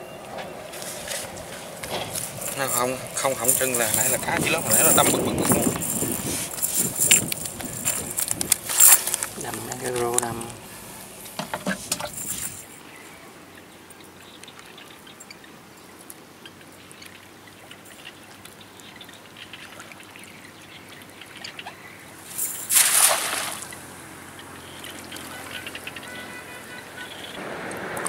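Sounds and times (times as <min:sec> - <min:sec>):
water trickling and dripping: 0:13.5 - 0:26.2
loud water splash: 0:22.6 - 0:23.8.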